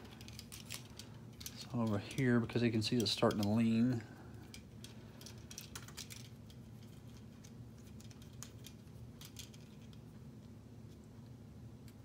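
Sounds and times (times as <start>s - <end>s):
plastic pieces clicking together: 0.0s - 3.8s, 4.4s - 10.0s
steady low hum: 0.0s - 12.0s.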